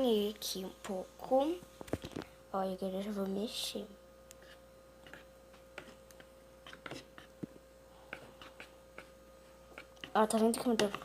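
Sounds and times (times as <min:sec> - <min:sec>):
spoon stirring slime in a bowl: 0:04.2 - 0:11.0.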